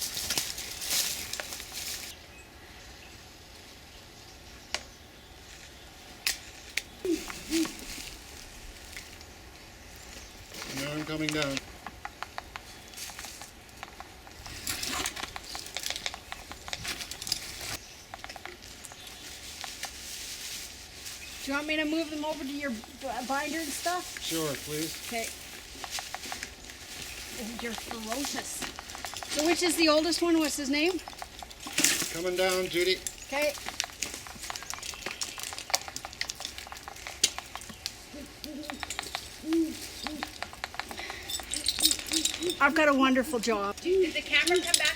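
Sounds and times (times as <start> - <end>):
rustling: 0.0 - 2.2, 5.4 - 44.9
owl hooting: 7.0 - 8.6, 33.3 - 41.3
sharp clicks and taps: 10.9 - 14.4, 18.1 - 19.0, 33.0 - 42.5.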